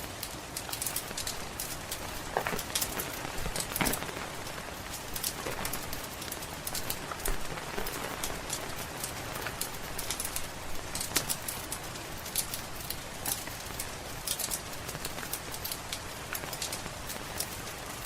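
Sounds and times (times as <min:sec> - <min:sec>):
rain pattering: 0:00.0 - 0:18.0
wood fire crackling: 0:00.0 - 0:18.0.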